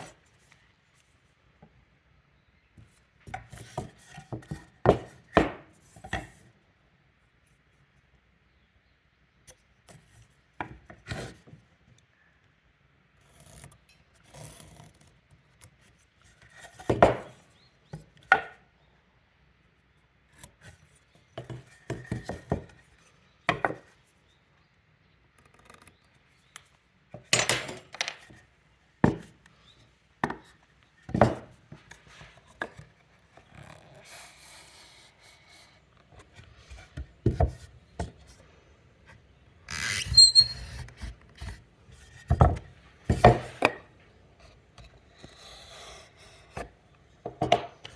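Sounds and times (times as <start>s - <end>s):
tools knocking on wood: 42.3s - 43.8s, 47.3s - 47.9s
scribing tool scraping wood: 44.4s - 46.7s.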